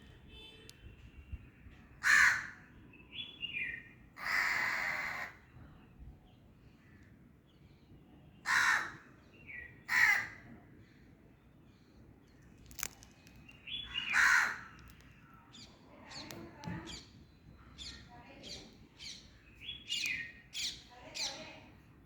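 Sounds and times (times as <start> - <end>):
crow cawing: 2.0 - 2.6, 4.2 - 5.4, 8.4 - 9.1, 9.9 - 10.5, 13.9 - 14.8.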